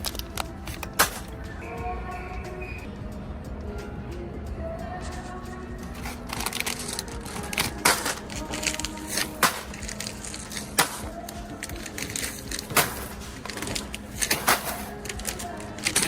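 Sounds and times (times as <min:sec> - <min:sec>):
crinkling and handling noise: 0:00.0 - 0:01.7, 0:05.0 - 0:16.0
faint background music: 0:00.0 - 0:16.0.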